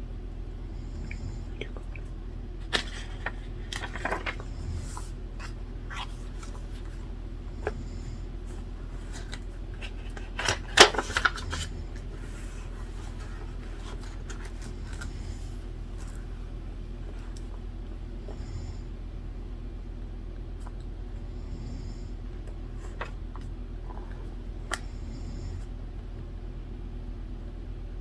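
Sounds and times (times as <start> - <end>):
steady low hum: 0.0 - 28.0
paper rustling: 2.6 - 7.8, 8.5 - 16.2.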